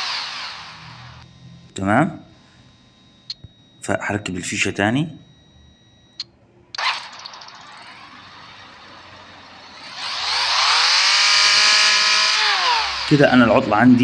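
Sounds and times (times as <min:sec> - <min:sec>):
car engine revving: 0:00.0 - 0:03.6, 0:06.8 - 0:14.0
click: 0:03.2 - 0:03.7, 0:05.3 - 0:07.6.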